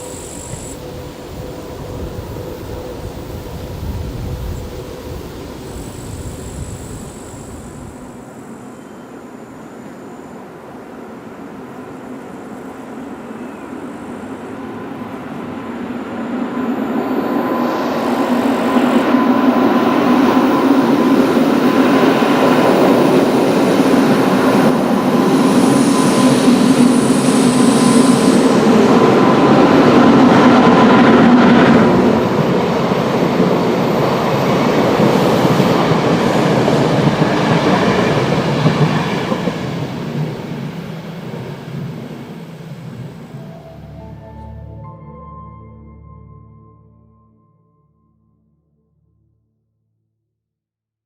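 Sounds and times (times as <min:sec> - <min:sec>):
locomotive cooling fans droning: 0:00.0 - 0:44.8
train wheels rushing: 0:11.0 - 0:43.8.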